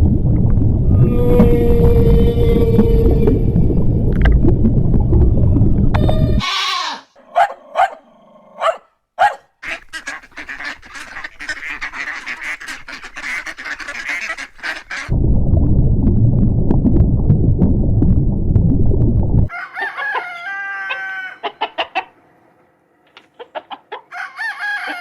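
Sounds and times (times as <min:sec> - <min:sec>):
loud low rumbling: 0:00.0 - 0:06.4, 0:15.1 - 0:19.5.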